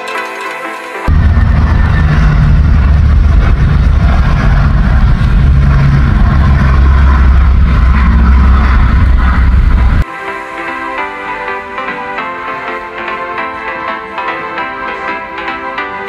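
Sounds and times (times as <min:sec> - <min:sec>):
low hum: 0:01.1 - 0:10.0
vehicle engine rumble: 0:01.1 - 0:10.0.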